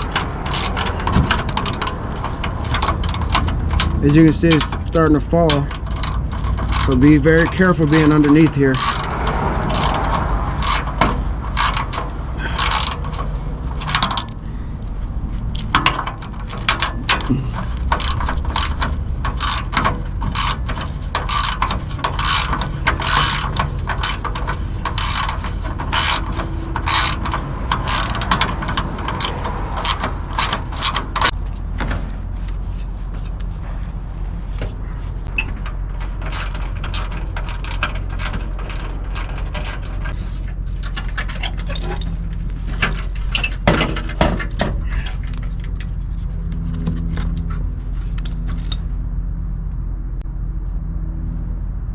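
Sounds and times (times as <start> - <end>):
ratchet wrench clicking: 0.0 - 14.4, 15.5 - 31.4
steady low hum: 0.0 - 51.9.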